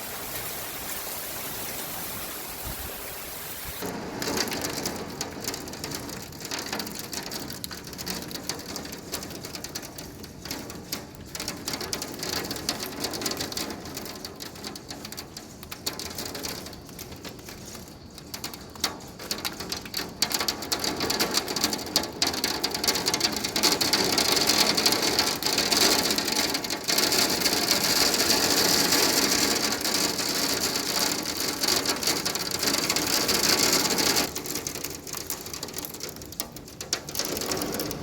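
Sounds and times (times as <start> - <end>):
heavy rain and hail: 0.0 - 38.0.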